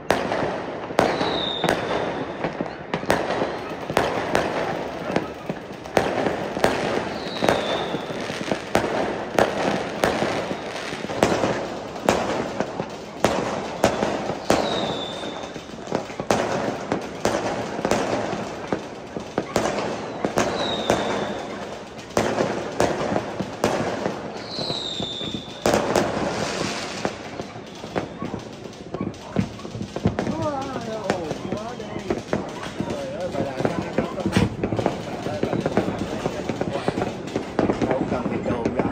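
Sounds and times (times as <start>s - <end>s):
fireworks bangs and pops: 0.0s - 38.9s.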